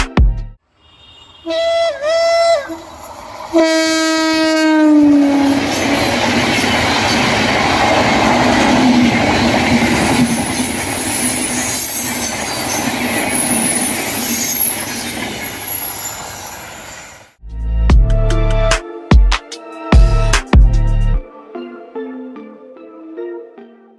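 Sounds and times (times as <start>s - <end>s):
high wheel squeals: 0.7s - 3.6s, 9.4s - 17.4s
train horn: 0.8s - 6.2s
train wheels rushing on rails: 2.6s - 3.7s, 5.0s - 17.4s.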